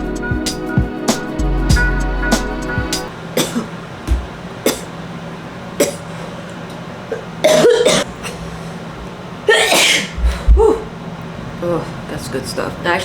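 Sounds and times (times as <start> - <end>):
woman coughing: 3.4 - 3.8, 4.7 - 4.9, 7.4 - 8.1, 9.5 - 10.8.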